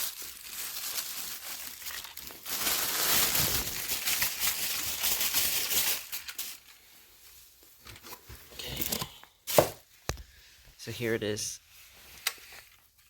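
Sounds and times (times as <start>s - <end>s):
packaging crinkling and rustling: 0.0s - 6.8s.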